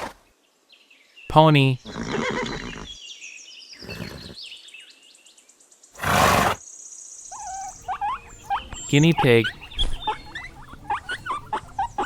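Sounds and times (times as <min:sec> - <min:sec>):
small birds chirping: 0:00.5 - 0:12.0
pony snorting: 0:06.0 - 0:06.6.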